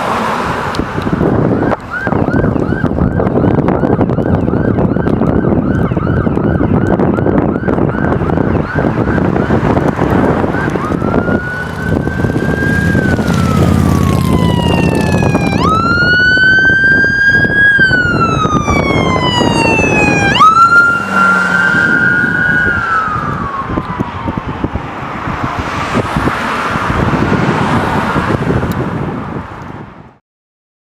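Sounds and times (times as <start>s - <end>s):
electronic siren yelping: 1.4s - 24.8s
mechanical siren winding up: 10.2s - 24.1s.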